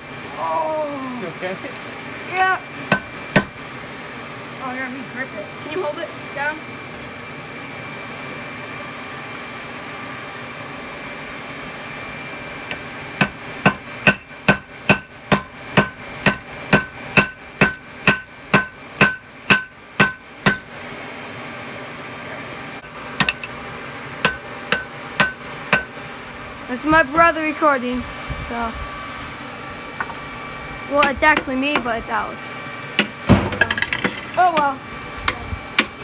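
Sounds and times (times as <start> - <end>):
hammer striking steel on anvil: 2.9 - 3.5, 13.2 - 20.7, 23.2 - 23.6, 24.2 - 25.9.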